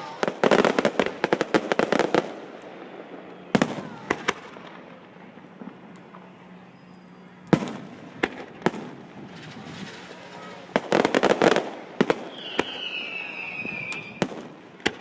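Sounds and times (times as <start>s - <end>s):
fireworks sharp bangs: 0.0s - 6.6s, 7.4s - 15.0s
fireworks crackling: 0.0s - 15.0s.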